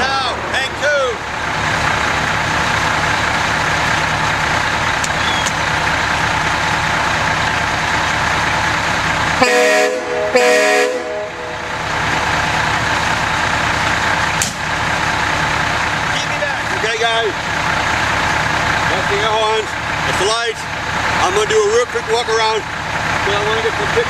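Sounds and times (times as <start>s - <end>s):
diesel engine idling: 0.0s - 24.0s
truck air horn blasts: 9.4s - 12.2s.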